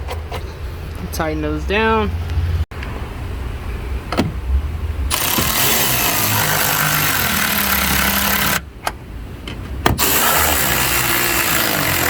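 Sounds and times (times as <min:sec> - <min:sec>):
cordless power tool running: 0:05.1 - 0:08.6, 0:10.0 - 0:12.0.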